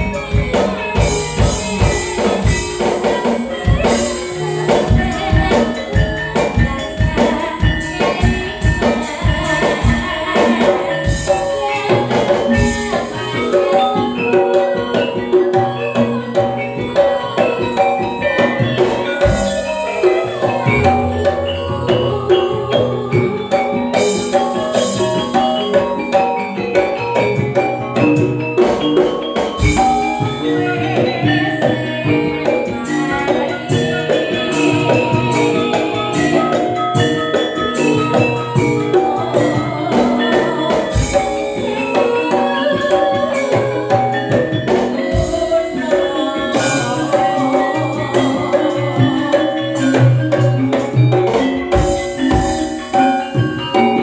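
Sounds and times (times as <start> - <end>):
drums and percussion: 0.0 - 54.0
metallophone melody: 0.0 - 54.0.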